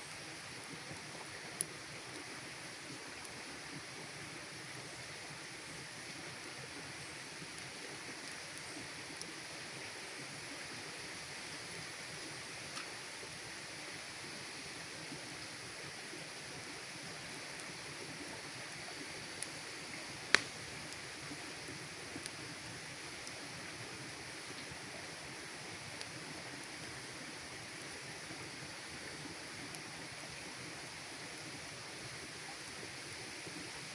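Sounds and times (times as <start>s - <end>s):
campfire hissing: 0.0s - 33.9s
wood crackling and popping: 19.4s - 22.4s.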